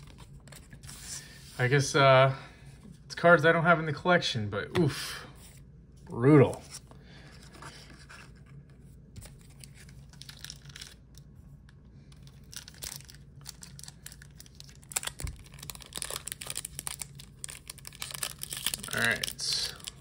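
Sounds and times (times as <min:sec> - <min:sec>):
foil wrapper crinkling and tearing: 0:09.2 - 0:11.2, 0:12.1 - 0:20.0.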